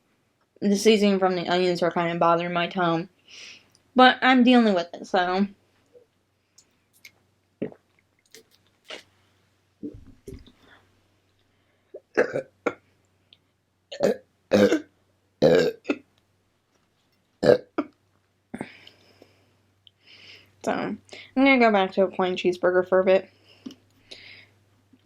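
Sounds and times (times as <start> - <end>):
person burping: 12.0 - 12.8, 13.9 - 16.0, 17.4 - 18.0.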